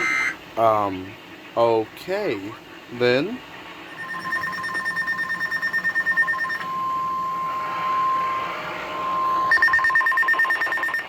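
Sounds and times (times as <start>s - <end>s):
steady warning alarm tone: 0.0s - 0.9s, 3.8s - 11.0s.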